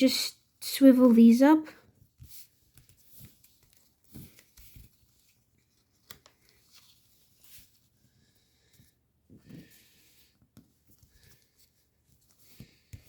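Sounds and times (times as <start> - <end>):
paper rustling and crinkling: 1.9 - 8.0.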